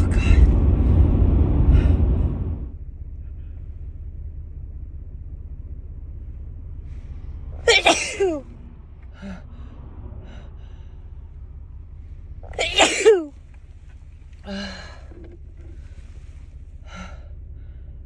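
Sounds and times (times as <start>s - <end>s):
person sneezing: 7.7s - 8.4s, 12.6s - 13.3s.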